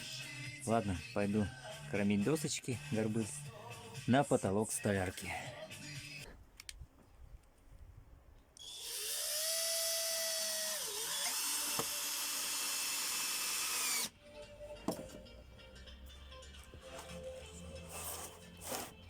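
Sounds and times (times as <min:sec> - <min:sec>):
electric power tool whining: 0:08.6 - 0:14.1.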